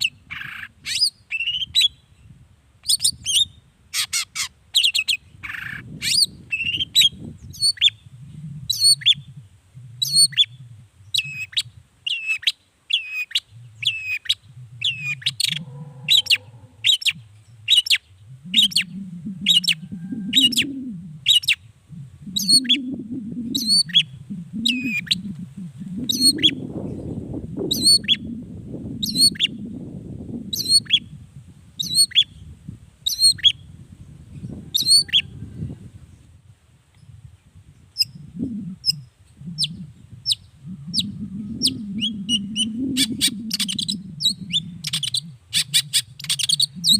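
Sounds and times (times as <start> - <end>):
low rumble: 38.1 - 45.5.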